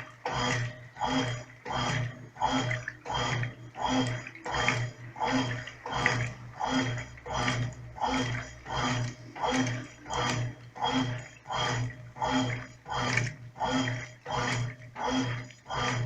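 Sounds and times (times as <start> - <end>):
washing machine motor humming: 0.0 - 16.0
water sloshing: 0.0 - 16.0.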